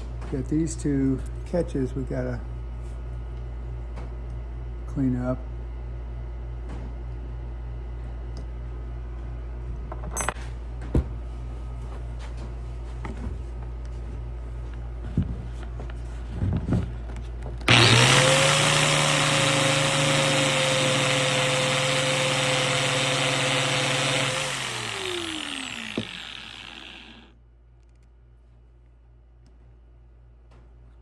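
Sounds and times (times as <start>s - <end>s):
power tool polishing metal: 17.7s - 27.3s.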